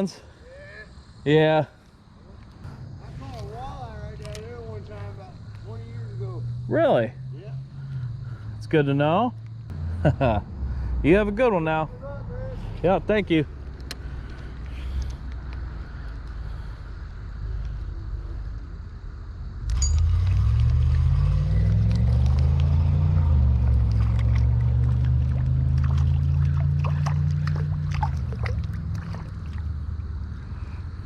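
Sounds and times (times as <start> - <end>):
engine starting and running: 19.5 - 29.3.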